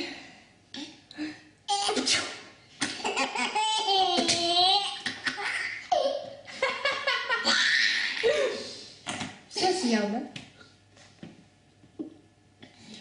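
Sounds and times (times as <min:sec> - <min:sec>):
baby laughing: 0:02.8 - 0:08.5.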